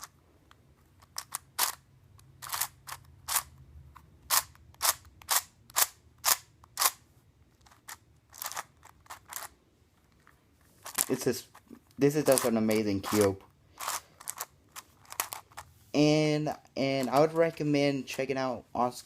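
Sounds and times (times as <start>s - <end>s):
puzzle cube layers clacking: 0.0s - 15.7s, 16.6s - 17.6s
rasping puzzle cube turn: 0.0s - 15.7s.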